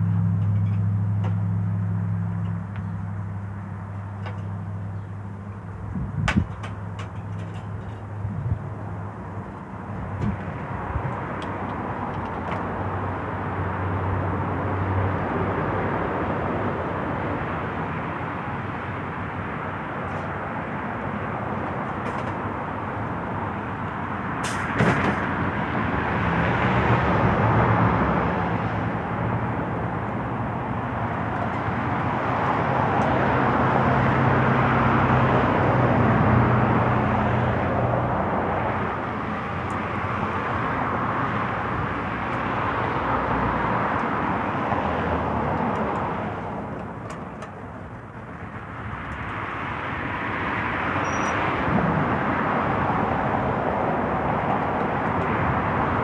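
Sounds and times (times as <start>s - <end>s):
road traffic passing: 0.0s - 56.0s.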